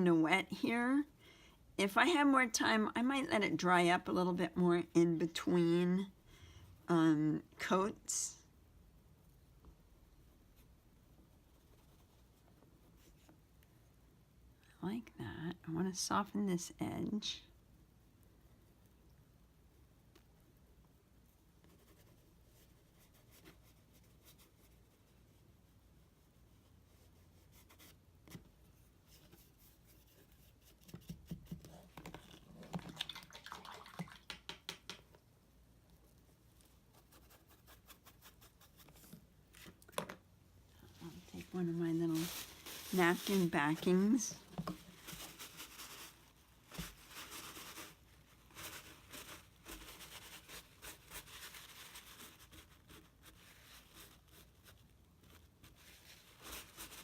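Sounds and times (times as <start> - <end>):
paintbrush tapping and scraping: 27.4 - 35.3, 43.0 - 45.4
tissue paper rustling: 40.8 - 54.9, 55.6 - 57.0.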